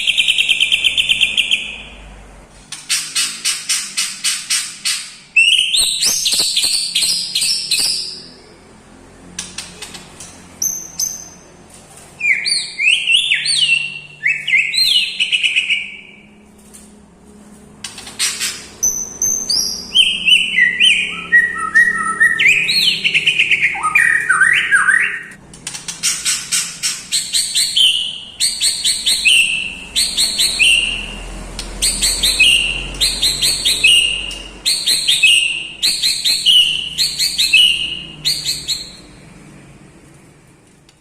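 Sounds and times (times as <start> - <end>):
songbird singing whistled notes: 3.0 - 8.4, 12.2 - 16.2, 18.8 - 25.4, 26.8 - 39.1
stuttering bird trill: 18.2 - 25.4, 26.0 - 39.1.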